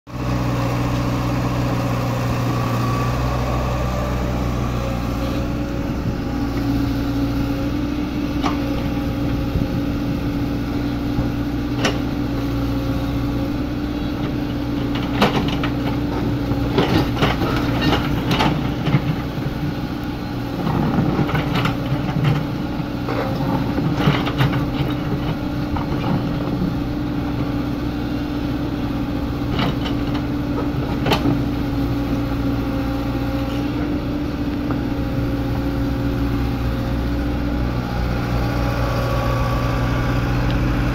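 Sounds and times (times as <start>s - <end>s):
excavator diesel engine running: 0.1s - 40.9s
excavator bucket knocks and clanks: 14.8s - 19.3s.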